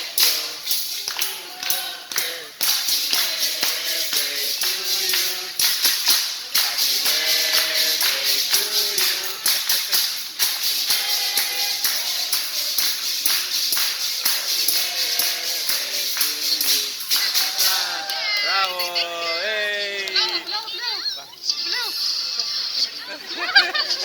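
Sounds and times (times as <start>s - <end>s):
background music with percussion: 0.0s - 18.1s.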